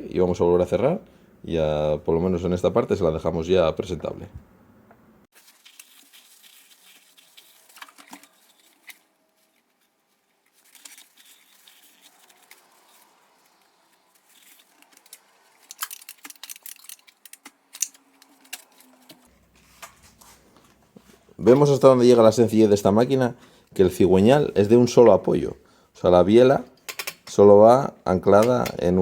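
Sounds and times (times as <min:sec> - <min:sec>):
scrubbing rustles: 0:05.4 - 0:15.6
small engine parts clicking: 0:14.4 - 0:18.7.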